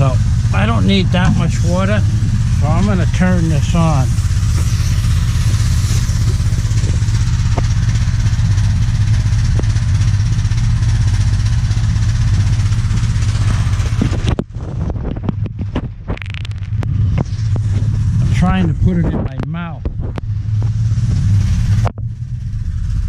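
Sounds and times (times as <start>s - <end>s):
pressure washer running: 0.0s - 14.4s.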